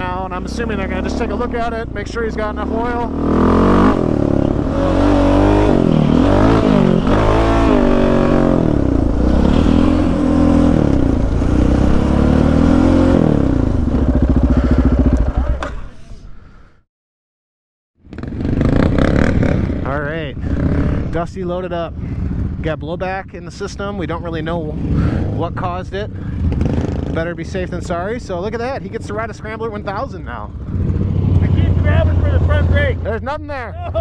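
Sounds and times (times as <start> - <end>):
quad engine revving: 0.0 - 15.8, 18.0 - 21.3, 26.2 - 27.4, 30.3 - 33.2.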